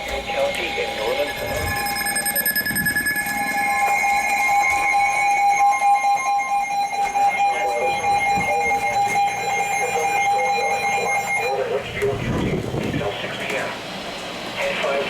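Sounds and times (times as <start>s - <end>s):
electronic two-tone alarm: 0.5s - 11.6s.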